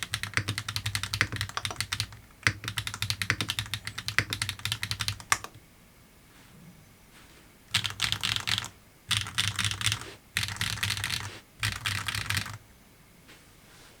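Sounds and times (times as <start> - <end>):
mechanical keyboard typing: 0.0 - 5.6, 7.7 - 12.6.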